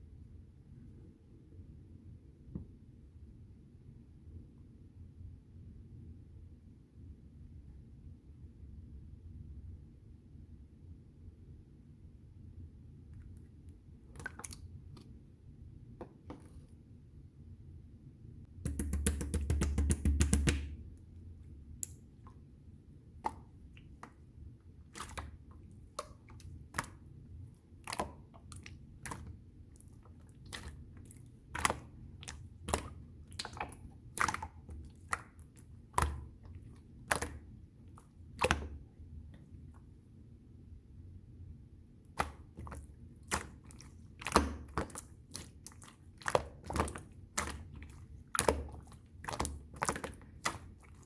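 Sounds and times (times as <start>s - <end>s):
slime squishing with sticky pops: 23.1s - 39.9s, 42.1s - 51.0s.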